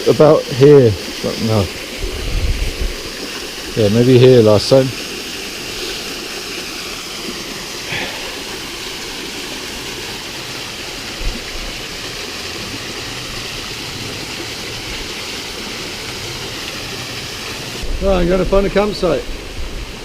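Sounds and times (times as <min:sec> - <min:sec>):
water falling and rushing: 0:00.0 - 0:20.0.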